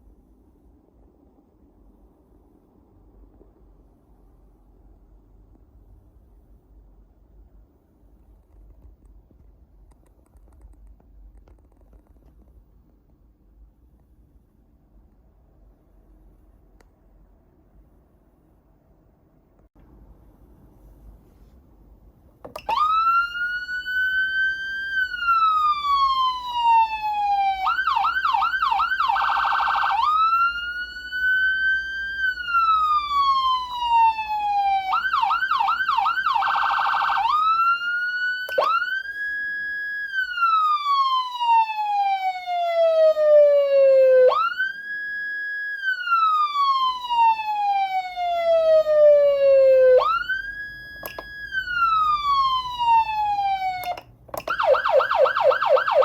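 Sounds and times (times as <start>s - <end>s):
electronic siren wailing and yelping: 22.5s - 56.0s.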